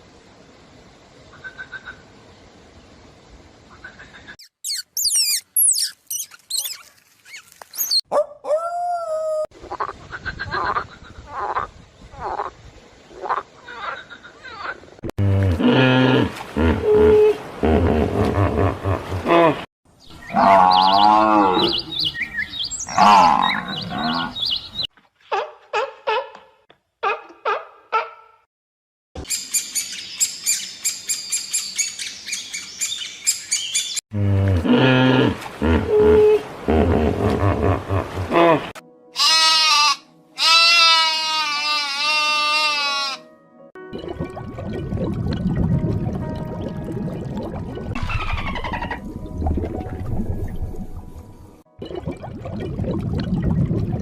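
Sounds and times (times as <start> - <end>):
small birds chirping: 4.0 - 8.0
dog howling: 8.1 - 9.5.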